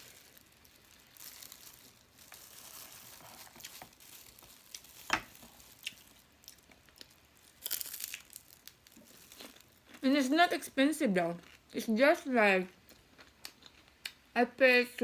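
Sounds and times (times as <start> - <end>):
soft chewing: 0.0 - 10.2, 12.7 - 14.2.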